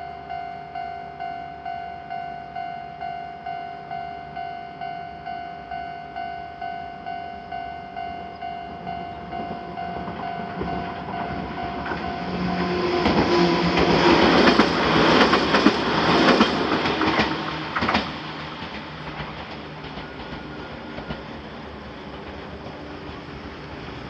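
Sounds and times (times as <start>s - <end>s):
railroad crossing bell ringing: 0.0s - 13.3s
train running noise: 6.6s - 24.0s.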